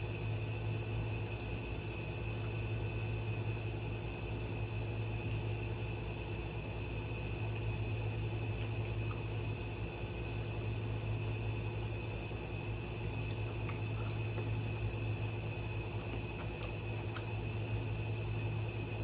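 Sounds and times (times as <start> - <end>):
air conditioner humming: 0.0 - 19.0
faint eating clicks: 0.2 - 7.8, 8.5 - 9.5, 12.2 - 18.9.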